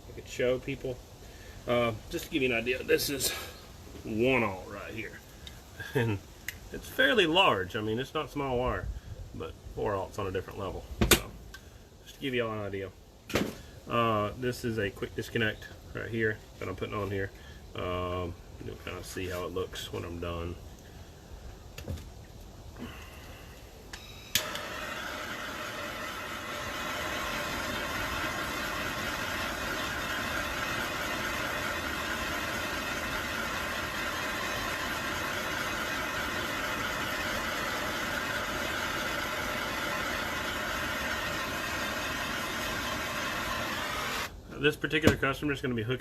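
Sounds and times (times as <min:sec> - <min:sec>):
heating tool rushing hiss: 0:22.8 - 0:44.4.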